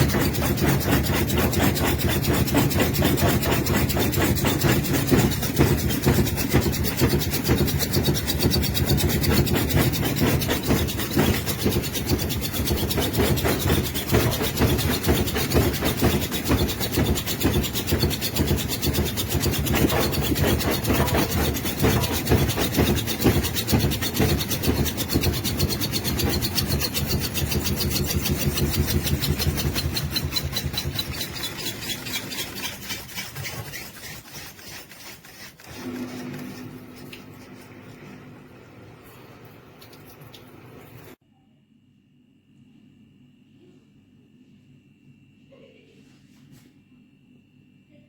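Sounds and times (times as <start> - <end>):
washing machine drum spinning: 0.0 - 32.8.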